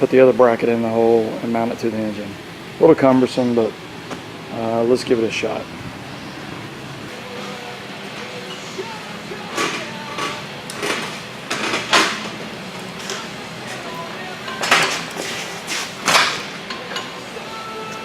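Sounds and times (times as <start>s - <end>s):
steel brackets clanking on metal: 9.6s - 17.2s.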